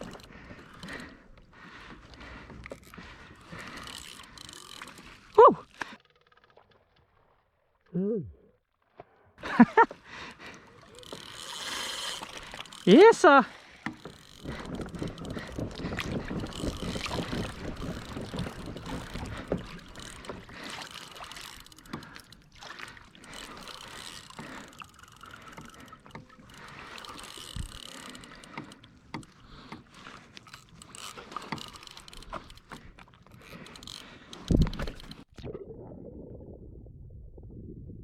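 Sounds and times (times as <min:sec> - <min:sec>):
water sloshing against kayak hull: 0:00.0 - 0:07.9, 0:08.8 - 0:36.7
knocks and clicks on boat: 0:13.7 - 0:35.3
wind on microphone: 0:14.4 - 0:19.9, 0:36.0 - 0:38.0.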